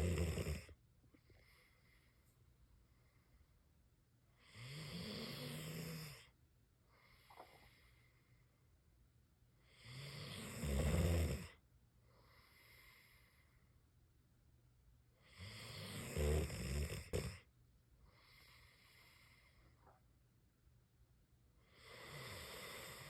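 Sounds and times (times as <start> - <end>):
person snoring: 0.0 - 0.7, 4.4 - 6.3, 9.7 - 11.6, 15.2 - 17.4, 21.7 - 23.0
faint breaths: 1.1 - 8.8, 12.0 - 13.9, 18.0 - 20.0.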